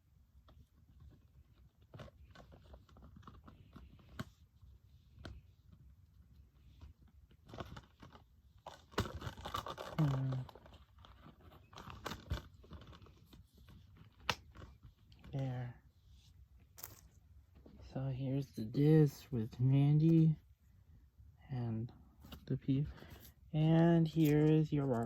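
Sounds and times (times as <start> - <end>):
packaging crinkling and rustling: 0.5 - 15.7.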